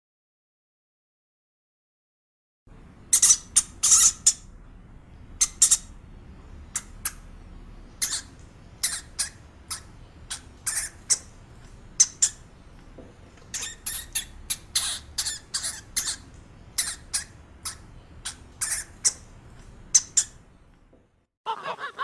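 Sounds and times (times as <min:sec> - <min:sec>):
small animal high-pitched calls: 0:08.0 - 0:11.3, 0:16.8 - 0:19.2.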